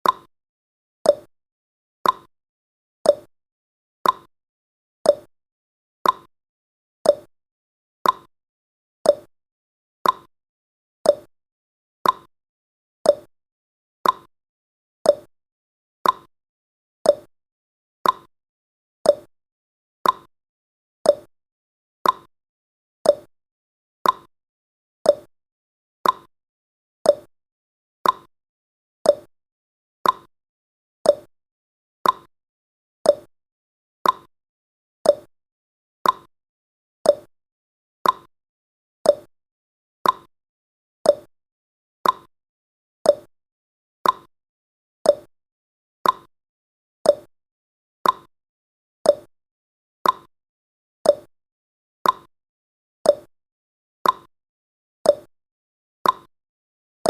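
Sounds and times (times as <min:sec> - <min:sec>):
clock ticking: 0:32.0 - 0:32.3, 0:38.0 - 0:38.3, 0:42.0 - 0:42.3, 0:46.0 - 0:46.3.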